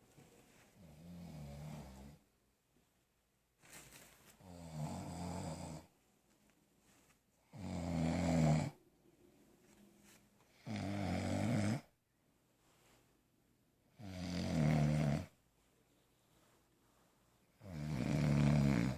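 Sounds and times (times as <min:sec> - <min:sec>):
quiet breathing: 0:00.0 - 0:02.4, 0:03.6 - 0:18.9
loud rattling snores: 0:10.6 - 0:11.9, 0:14.0 - 0:15.3, 0:17.6 - 0:18.9.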